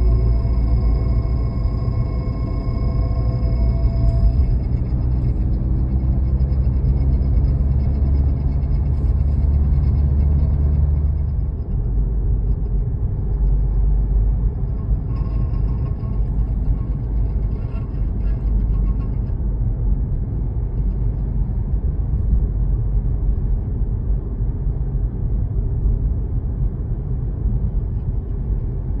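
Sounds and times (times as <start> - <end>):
high scraping sound: 0.0 - 11.6
road and drivetrain rumble: 0.0 - 29.0.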